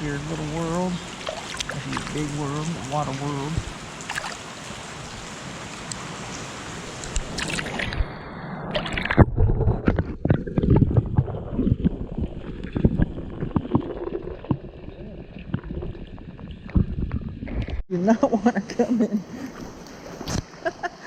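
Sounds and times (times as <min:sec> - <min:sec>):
river water rushing: 0:00.0 - 0:07.8.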